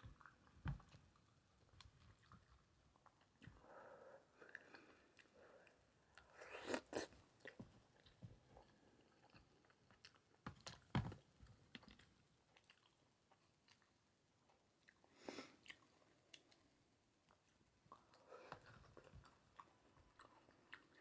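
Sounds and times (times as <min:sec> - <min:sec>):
person chewing and mouth sounds: 0:04.4 - 0:10.9, 0:11.8 - 0:16.7, 0:17.3 - 0:21.0.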